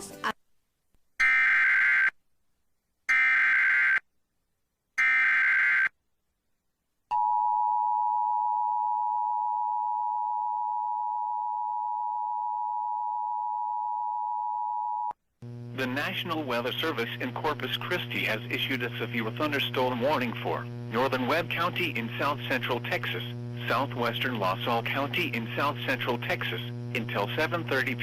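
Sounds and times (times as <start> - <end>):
buzzy digital header tone: 15.4 - 28.0.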